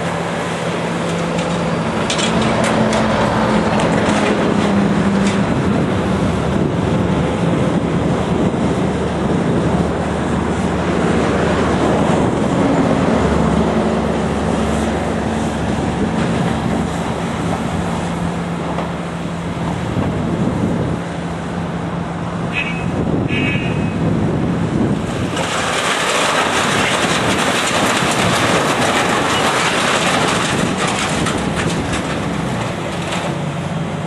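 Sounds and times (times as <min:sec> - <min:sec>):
diesel engine running loudly: 0:00.0 - 0:23.3, 0:24.0 - 0:34.0
rumbling and grinding: 0:00.0 - 0:23.3, 0:23.9 - 0:34.0.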